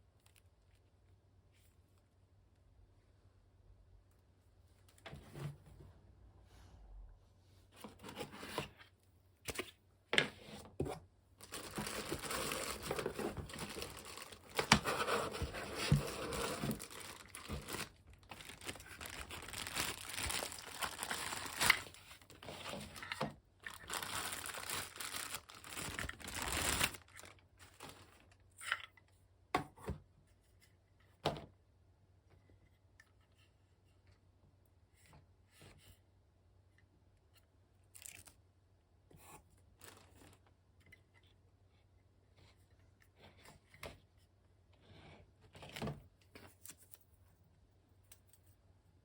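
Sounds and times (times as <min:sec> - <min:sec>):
packaging crinkling and tearing: 0:11.4 - 0:28.3, 0:39.8 - 0:40.4.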